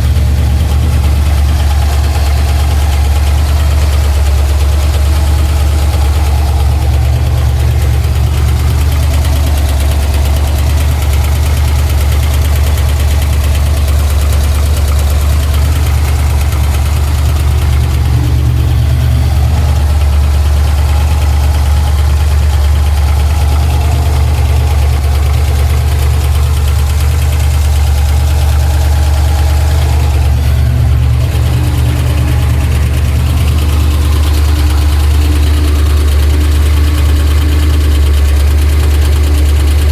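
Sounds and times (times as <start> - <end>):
car engine idling: 0.0 - 39.9
engine knocking: 0.0 - 39.9.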